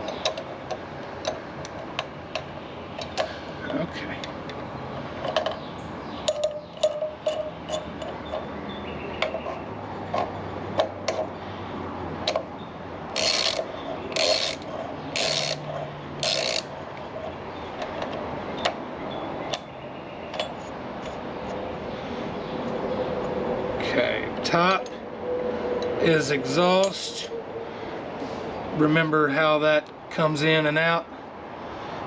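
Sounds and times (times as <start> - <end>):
tools and parts knocking: 0.0 - 8.6, 9.2 - 11.3, 12.2 - 12.5, 13.2 - 18.8, 20.3 - 21.6
ratchet clicking: 13.1 - 16.7.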